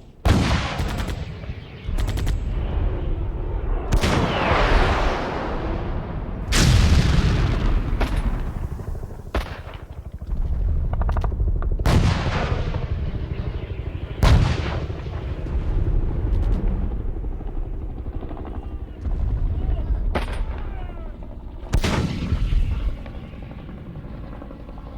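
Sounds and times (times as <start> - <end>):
heavy artillery blast: 0.0 - 23.6
machine-gun and rifle fire: 0.3 - 2.6
low rumble: 1.9 - 21.8.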